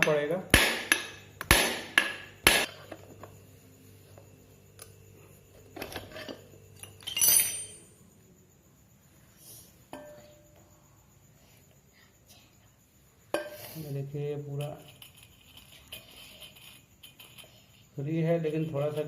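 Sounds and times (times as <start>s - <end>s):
metal parts clinking and clattering: 5.8s - 7.9s.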